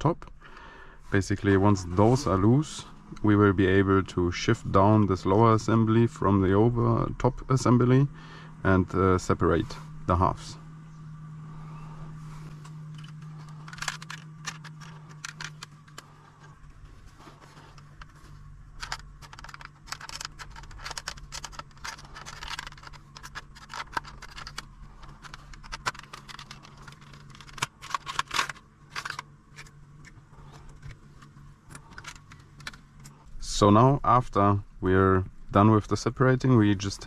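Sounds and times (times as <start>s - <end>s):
steady low hum: 0.0s - 37.0s
plastic parts clicking and scraping: 12.0s - 33.4s.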